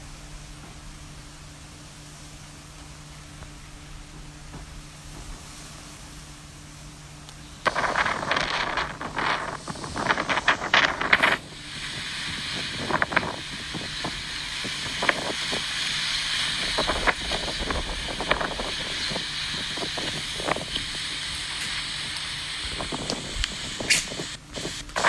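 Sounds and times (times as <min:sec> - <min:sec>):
wind gusting through trees: 0:07.2 - 0:25.0
scattered ticks: 0:07.7 - 0:25.0.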